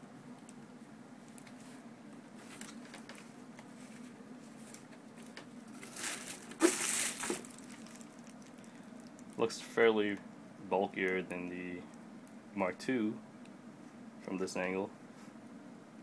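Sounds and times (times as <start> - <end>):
plastic packaging crinkling: 4.6 - 9.4.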